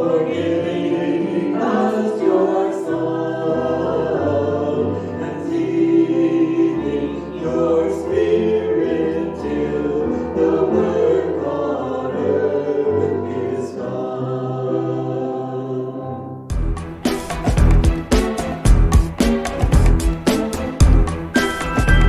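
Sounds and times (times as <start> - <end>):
choir singing: 0.0 - 22.0
held bass notes: 16.5 - 22.0.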